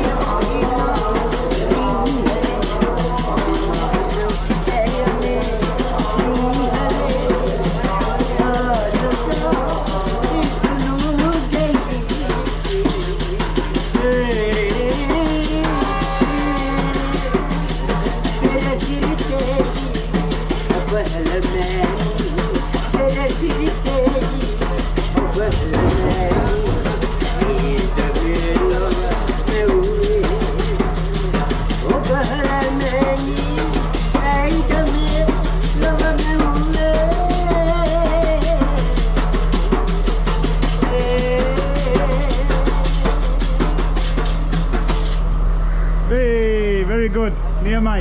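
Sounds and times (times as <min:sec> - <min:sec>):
people singing: 0:00.0 - 0:43.4
drum and tambourine: 0:00.0 - 0:45.5
train low rumble: 0:25.3 - 0:29.0.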